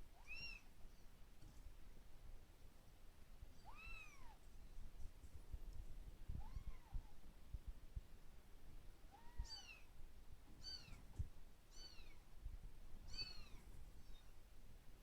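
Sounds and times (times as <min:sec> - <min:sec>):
kitten meowing: 0:06.4 - 0:07.0, 0:09.1 - 0:09.9, 0:10.6 - 0:11.0, 0:11.7 - 0:12.2, 0:13.1 - 0:14.2.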